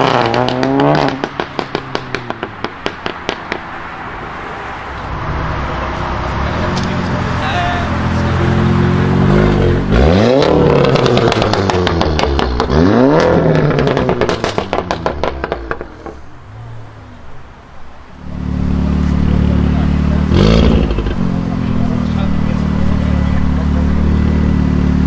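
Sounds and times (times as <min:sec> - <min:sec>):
exhaust crackles and pops: 0:00.0 - 0:03.8, 0:10.3 - 0:16.3
car engine revving: 0:00.0 - 0:04.1, 0:04.7 - 0:17.0, 0:18.1 - 0:25.0.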